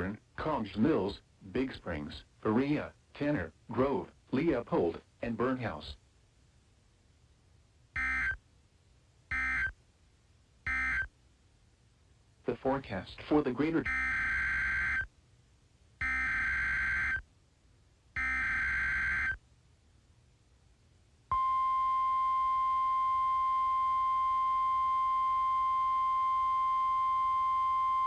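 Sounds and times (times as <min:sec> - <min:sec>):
steady warning alarm tone: 0:08.0 - 0:08.4, 0:09.3 - 0:09.7, 0:10.7 - 0:11.1, 0:13.8 - 0:15.1, 0:16.0 - 0:17.2, 0:18.2 - 0:19.4.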